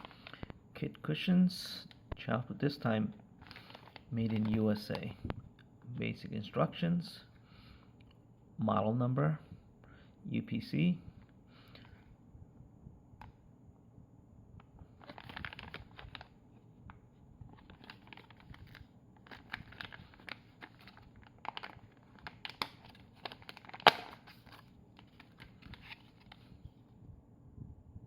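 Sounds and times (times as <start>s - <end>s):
packaging crinkling: 0.0s - 0.5s, 3.4s - 5.1s, 14.9s - 16.4s, 17.5s - 26.5s
faint steady hum: 0.0s - 28.0s.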